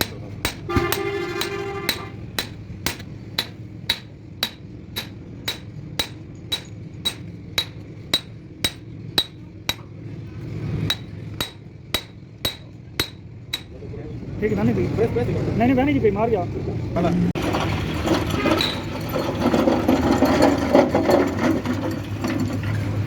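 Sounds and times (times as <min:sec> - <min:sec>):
hammer striking metal: 0:00.0 - 0:10.0, 0:10.8 - 0:13.8.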